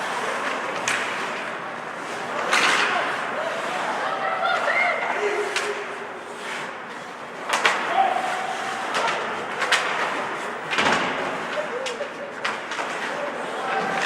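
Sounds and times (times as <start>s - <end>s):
distant shouts: 0.0s - 10.8s
hockey sticks and puck clacking: 0.0s - 14.0s.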